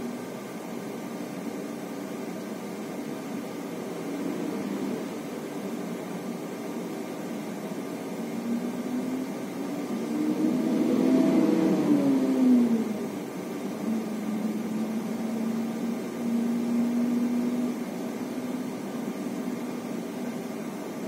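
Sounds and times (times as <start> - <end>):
low engine hum: 0.0 - 21.0.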